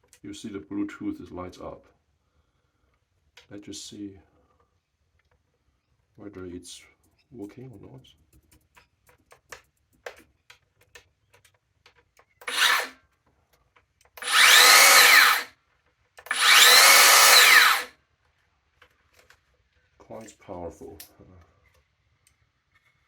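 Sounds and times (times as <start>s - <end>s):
circular saw whining: 12.4s - 13.0s, 14.2s - 15.5s, 16.3s - 17.9s.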